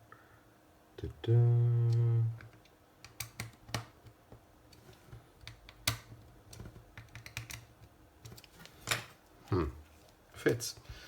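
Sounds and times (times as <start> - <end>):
plastic parts clicking together: 5.4 - 9.0.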